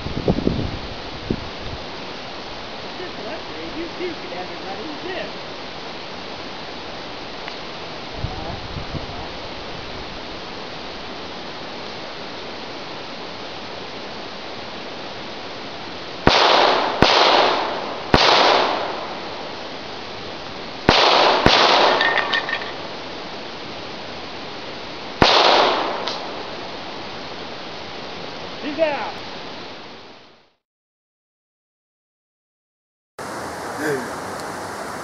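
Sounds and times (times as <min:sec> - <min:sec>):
steady hiss: 0:00.0 - 0:30.3, 0:33.2 - 0:35.0
pistol shots echoing: 0:16.3 - 0:19.3, 0:20.9 - 0:22.5, 0:25.2 - 0:26.4.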